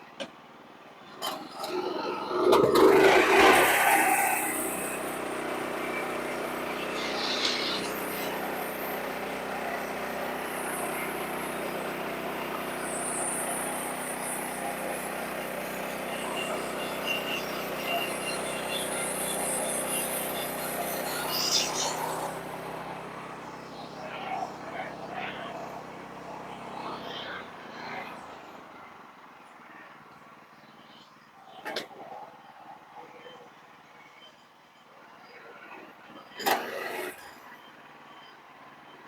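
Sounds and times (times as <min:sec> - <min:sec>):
sawmill machinery running: 0:01.1 - 0:28.7.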